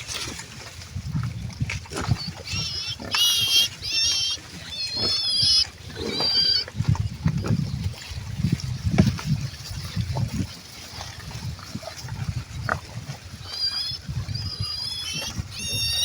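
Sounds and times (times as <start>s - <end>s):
pig squeals: 2.0s - 6.8s, 13.3s - 16.0s
pigs grunting: 2.3s - 6.7s.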